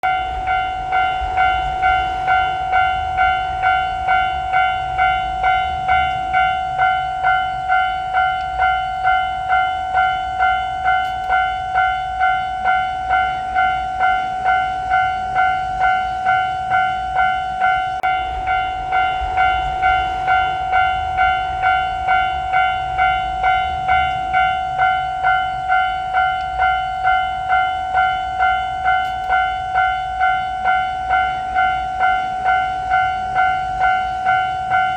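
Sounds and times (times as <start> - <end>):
level-crossing warning bell: 0.0 - 34.9.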